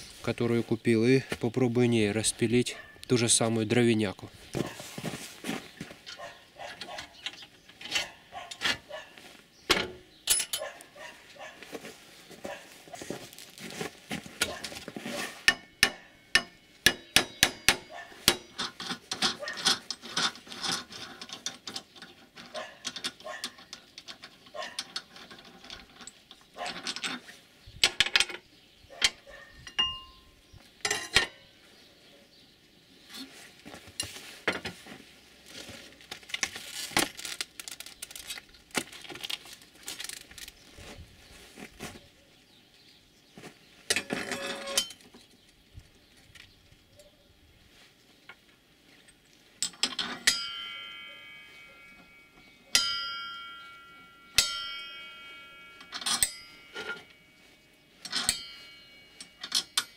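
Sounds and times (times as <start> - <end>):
metal clinks and knocks: 9.7 - 10.8, 14.4 - 28.4, 29.0 - 31.4, 43.9 - 45.2, 49.0 - 59.9
saw blade struck ringing: 15.5 - 18.6, 50.2 - 57.4, 58.2 - 59.9.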